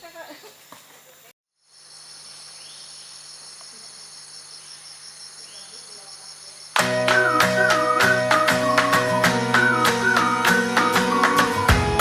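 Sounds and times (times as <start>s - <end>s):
insects trilling: 0.0s - 7.8s
loud music: 6.8s - 12.0s.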